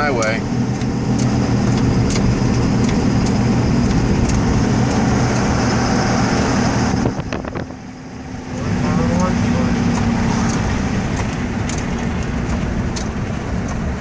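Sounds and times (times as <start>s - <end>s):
car engine hum: 0.0s - 14.0s
road and tyre noise: 0.0s - 14.0s.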